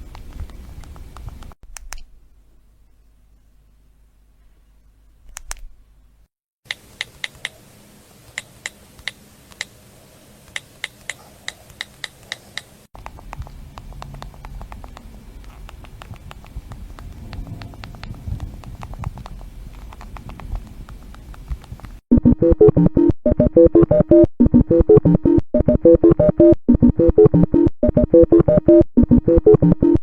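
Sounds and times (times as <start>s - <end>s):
phone buttons clicking: 5.3s - 5.7s, 10.5s - 21.9s
background rumble: 13.0s - 22.0s.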